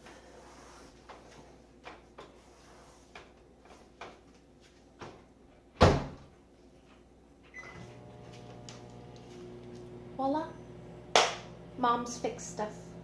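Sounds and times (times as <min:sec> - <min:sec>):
microwave running hum: 0:07.5 - 0:13.0.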